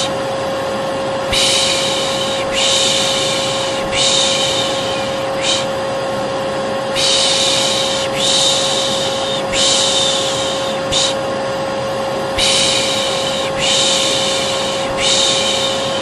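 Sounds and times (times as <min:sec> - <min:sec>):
vacuum cleaner motor humming: 0:00.0 - 0:16.0
person shushing: 0:01.3 - 0:05.8, 0:07.0 - 0:11.2, 0:12.4 - 0:16.0.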